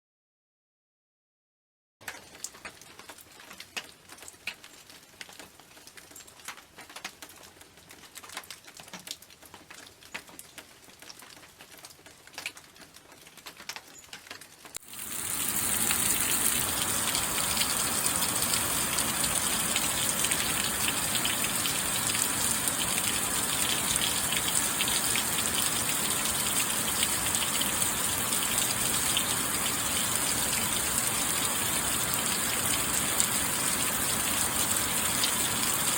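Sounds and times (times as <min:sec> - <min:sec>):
single raindrops falling: 0:12.4 - 0:28.8
dense rain downpour hiss: 0:14.7 - 0:35.9.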